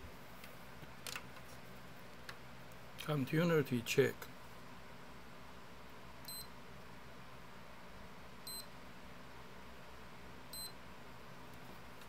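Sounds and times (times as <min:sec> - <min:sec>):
short high-pitched beeps: 0:06.3 - 0:06.5, 0:08.5 - 0:08.7, 0:10.5 - 0:10.8.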